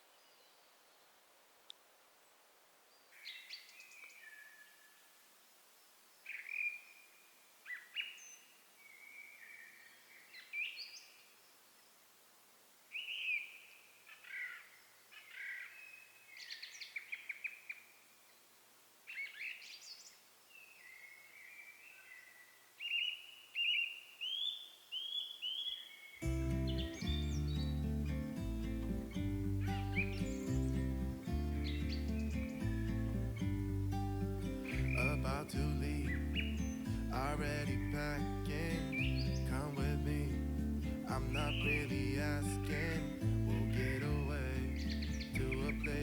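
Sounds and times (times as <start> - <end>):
songbirds singing: 2.9 - 5.1, 5.8 - 12.0, 12.9 - 18.5, 19.1 - 46.0.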